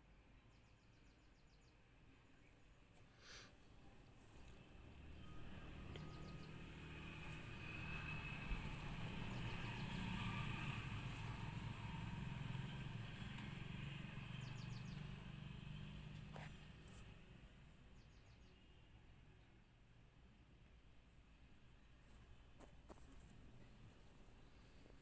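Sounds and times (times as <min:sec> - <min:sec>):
distant vehicle engine hum: 0:03.2 - 0:19.6
bird chirps: 0:05.2 - 0:06.6.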